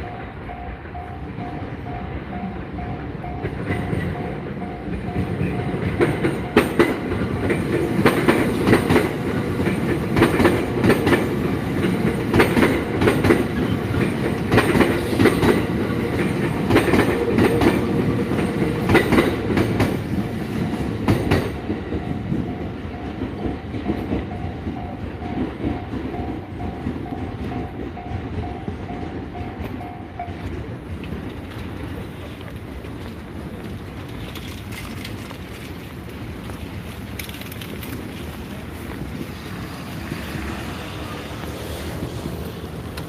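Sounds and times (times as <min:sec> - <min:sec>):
crossing warning bell ringing: 0:00.0 - 0:30.8
train wheels clattering over rails: 0:00.0 - 0:43.0.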